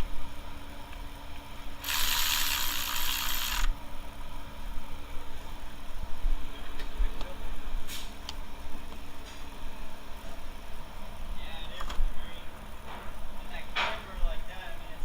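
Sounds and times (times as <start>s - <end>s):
ratchet wrench clicking: 1.8s - 3.7s.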